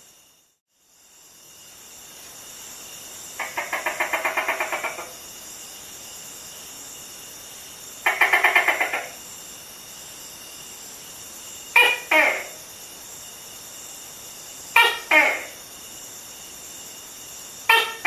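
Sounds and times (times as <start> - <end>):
high-pitched night ambience hiss: 0.0 - 18.0.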